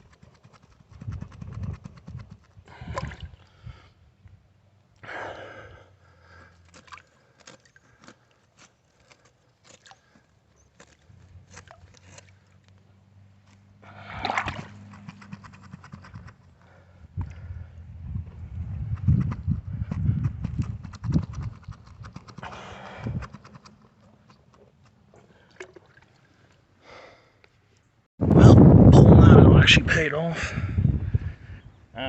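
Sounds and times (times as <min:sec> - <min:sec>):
water splashing: 0:02.2 - 0:03.6, 0:09.0 - 0:10.2, 0:13.8 - 0:16.2, 0:22.1 - 0:26.5.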